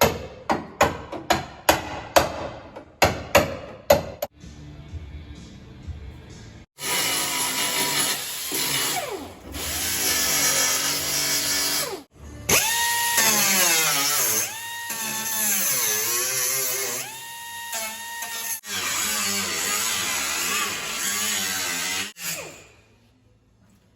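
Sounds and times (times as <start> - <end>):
power tool motor whining: 6.8 - 22.5.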